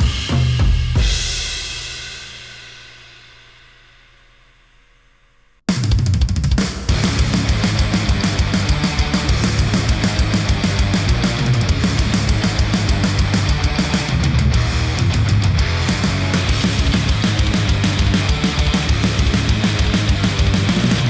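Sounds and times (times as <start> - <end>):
rock music through headphones: 6.8 - 21.0.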